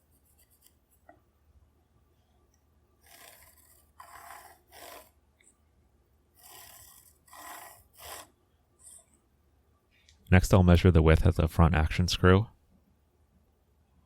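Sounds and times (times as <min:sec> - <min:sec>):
marking tool scraping on wood: 0:00.1 - 0:00.8, 0:03.0 - 0:05.2, 0:06.4 - 0:09.2.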